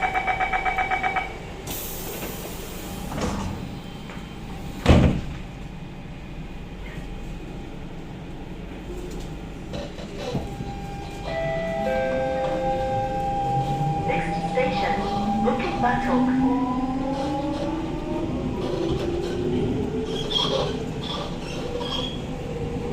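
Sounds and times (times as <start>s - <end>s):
train doors thudding shut: 4.8s - 5.5s.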